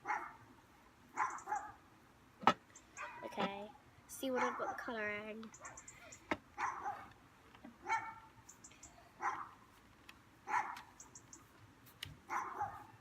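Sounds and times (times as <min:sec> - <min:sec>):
dog barking: 0:00.0 - 0:00.4, 0:01.2 - 0:01.8, 0:03.0 - 0:03.3, 0:04.4 - 0:04.9, 0:06.6 - 0:07.1, 0:07.8 - 0:08.3, 0:09.1 - 0:09.6, 0:10.5 - 0:10.9, 0:12.3 - 0:13.0.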